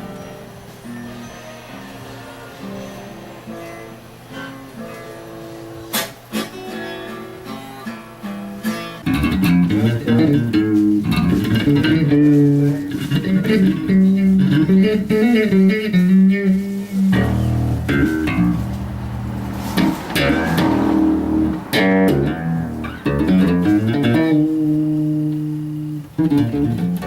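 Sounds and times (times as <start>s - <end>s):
guitar playing: 0.0s - 27.0s
deep bass notes: 9.1s - 15.7s, 17.0s - 27.0s.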